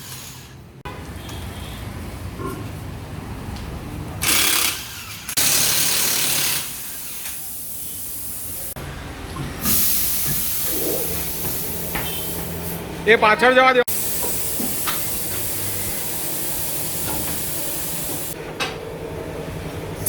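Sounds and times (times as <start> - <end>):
compressed air hissing: 6.7 - 8.8, 9.6 - 12.9, 13.9 - 18.4.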